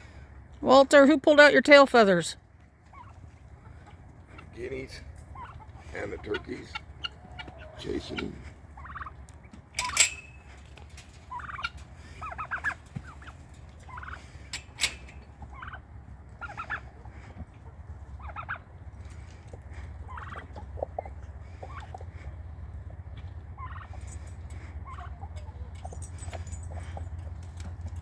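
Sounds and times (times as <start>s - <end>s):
turkeys gobbling: 0.0s - 27.9s.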